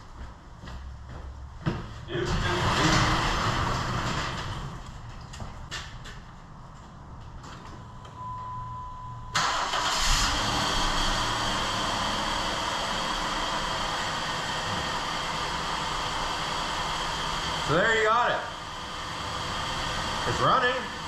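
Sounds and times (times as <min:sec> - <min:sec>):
car engine starting and idling: 0:02.1 - 0:05.2, 0:07.8 - 0:21.0
short steady tone: 0:08.2 - 0:09.4.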